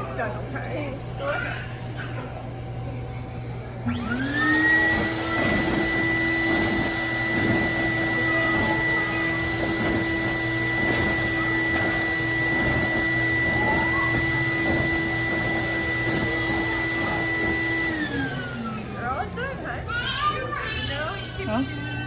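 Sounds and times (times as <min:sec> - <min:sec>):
blower motor whining: 0:00.0 - 0:22.0.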